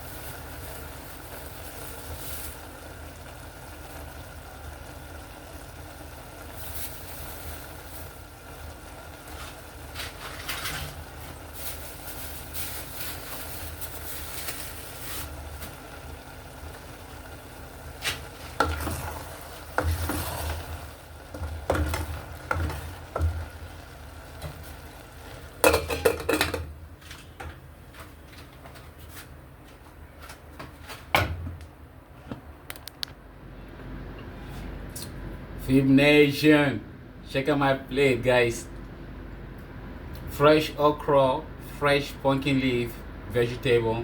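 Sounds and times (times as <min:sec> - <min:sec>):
utensil scraping and clinking on pot: 0:18.1 - 0:23.4, 0:25.6 - 0:26.7.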